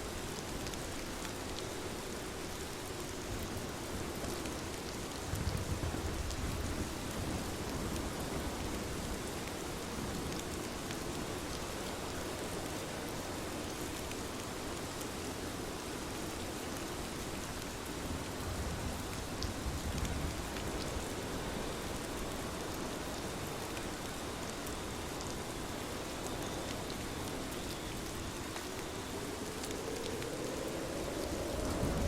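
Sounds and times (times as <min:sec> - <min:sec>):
steady rain: 0:00.0 - 0:32.0
raindrop ticks: 0:23.7 - 0:32.0.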